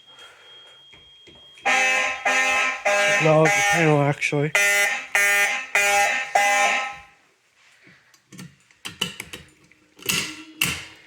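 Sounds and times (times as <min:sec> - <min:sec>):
fire alarm horn blasts: 0:00.4 - 0:07.2.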